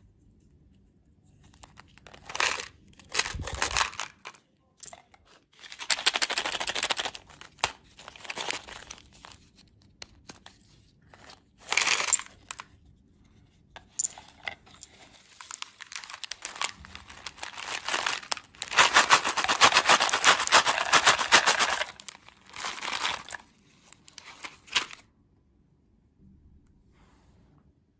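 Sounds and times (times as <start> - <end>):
candy wrapper crinkling and tearing: 1.6 - 4.4, 5.6 - 10.5, 11.1 - 12.7, 14.9 - 25.0.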